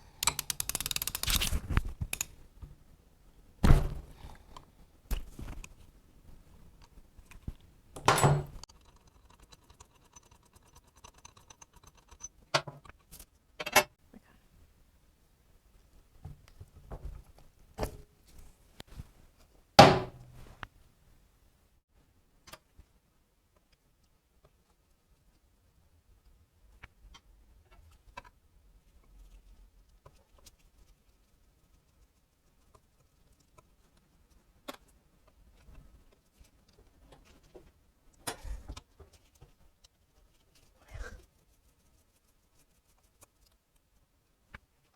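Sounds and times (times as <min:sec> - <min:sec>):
metal engine parts clicking: 0:00.1 - 0:01.5, 0:08.0 - 0:12.5
metal tools knocking and clunking: 0:08.0 - 0:09.0.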